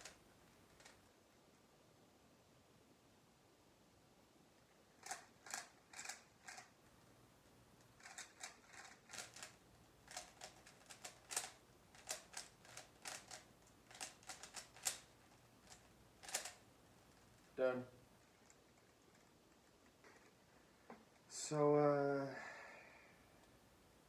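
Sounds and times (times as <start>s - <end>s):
plastic cube clicks: 8.1s - 15.1s, 15.7s - 16.6s.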